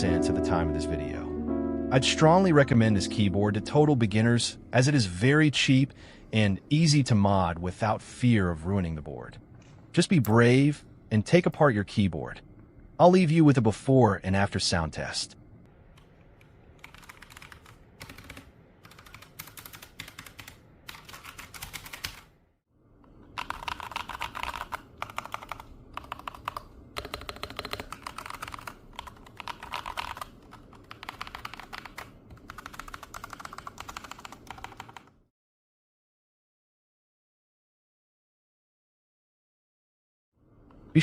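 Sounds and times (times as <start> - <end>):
typing on mechanical keyboard: 16.8 - 22.3, 23.3 - 35.1.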